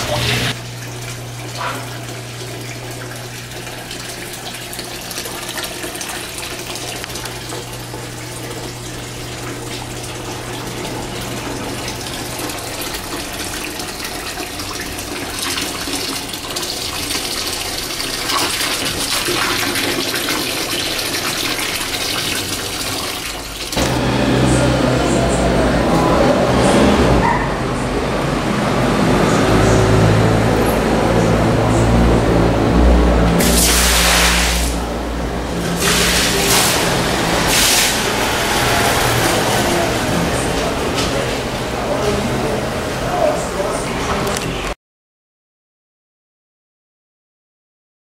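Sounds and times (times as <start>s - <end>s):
water pouring and splashing: 0.0s - 24.0s, 33.3s - 34.9s, 35.5s - 42.9s
low hum: 23.8s - 35.8s.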